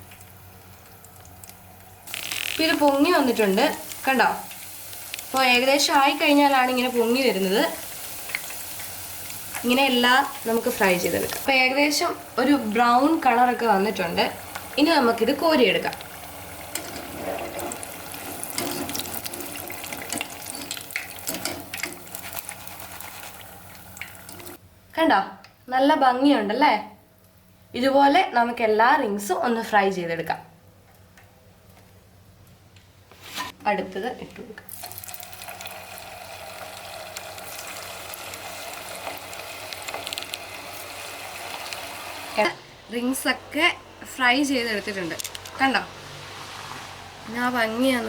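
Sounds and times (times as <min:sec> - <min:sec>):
crackles and clicks: 0:00.0 - 0:05.5, 0:07.8 - 0:11.5, 0:15.8 - 0:17.9, 0:37.1 - 0:41.9
oil sizzling: 0:00.0 - 0:24.6, 0:34.7 - 0:48.0.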